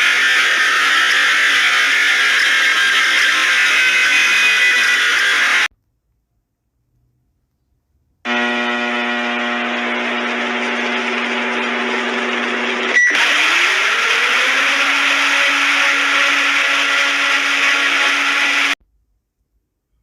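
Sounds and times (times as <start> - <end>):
loud buzzing alarm tone: 13.0 - 18.8.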